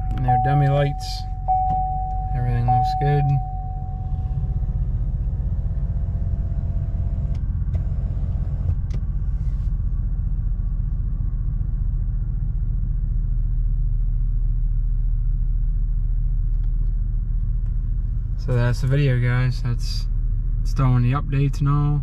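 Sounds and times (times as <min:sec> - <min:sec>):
truck engine idling: 0:00.0 - 0:08.5.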